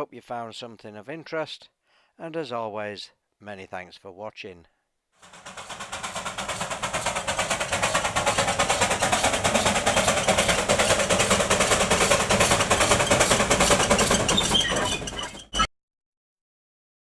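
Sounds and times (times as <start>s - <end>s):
steam locomotive exhaust beats: 5.2s - 15.7s.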